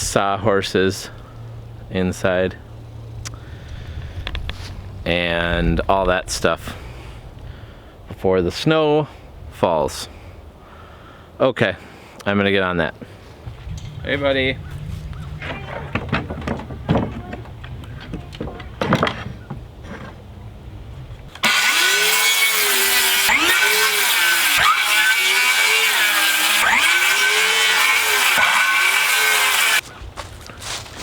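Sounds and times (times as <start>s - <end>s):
quiet handling knocks: 15.4s - 20.2s
power saw cutting board: 21.4s - 29.8s.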